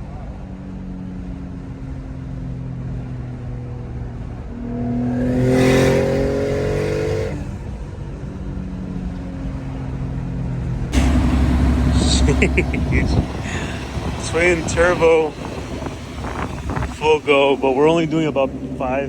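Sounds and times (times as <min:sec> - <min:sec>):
car engine accelerating: 0:00.0 - 0:19.0.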